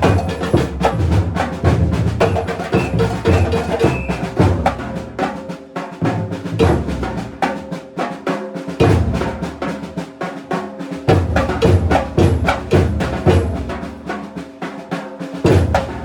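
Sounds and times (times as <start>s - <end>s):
deep bass drums: 0.0s - 5.2s
percussion ensemble drumming: 0.0s - 16.0s
snare drums: 0.0s - 16.0s.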